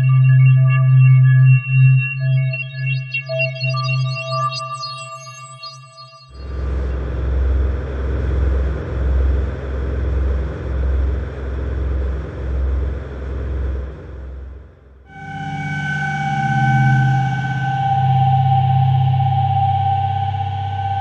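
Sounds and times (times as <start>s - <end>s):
deep rumbling drone: 6.4s - 21.0s.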